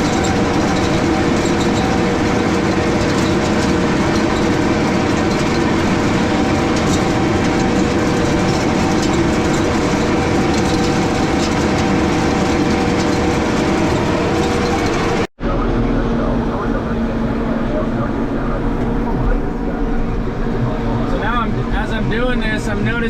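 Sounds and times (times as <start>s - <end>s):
faint machinery rattle: 0.0s - 15.3s
tractor engine droning: 0.0s - 23.0s.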